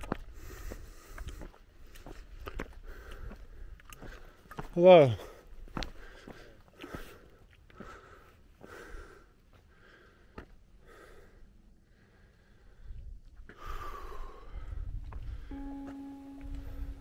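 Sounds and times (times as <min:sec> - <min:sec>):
person breathing hard: 0:00.2 - 0:04.4, 0:05.2 - 0:15.4
faint footstep clicks: 0:01.1 - 0:04.8.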